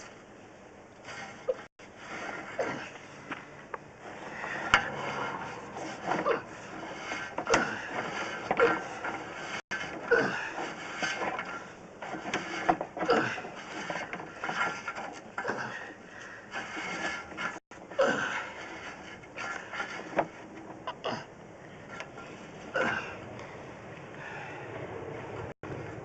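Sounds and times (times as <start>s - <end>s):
camera scraping inside pipe: 1.0s - 3.3s, 4.0s - 20.8s.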